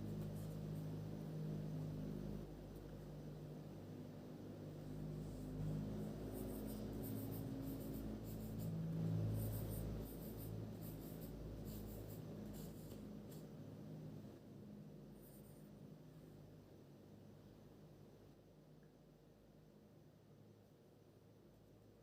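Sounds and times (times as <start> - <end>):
low steady hum: 0.0 - 22.0
pen scratching on paper: 6.0 - 13.4.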